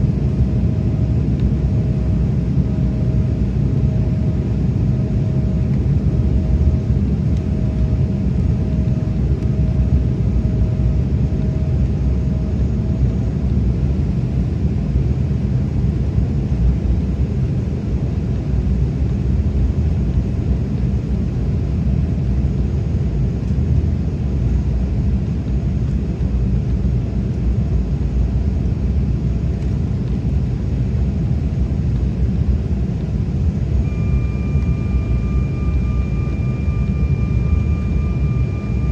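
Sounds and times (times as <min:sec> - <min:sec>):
airliner cabin engine roar: 0:00.0 - 0:38.9
faint steady tone: 0:33.4 - 0:38.9.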